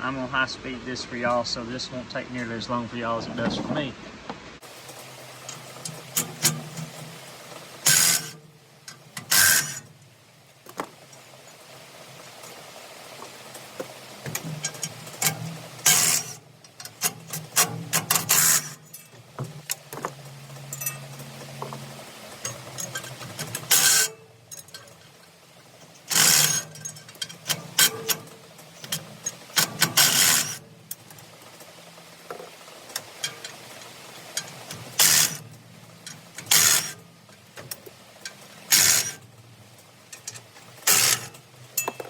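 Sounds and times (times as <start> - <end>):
tools clicking and clanking on metal: 5.4 - 10.0, 13.5 - 42.0.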